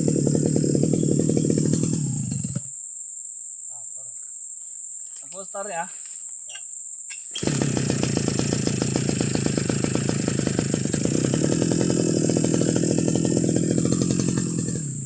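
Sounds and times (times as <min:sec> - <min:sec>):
brush cutter engine running: 0:00.0 - 0:02.7, 0:07.3 - 0:15.0.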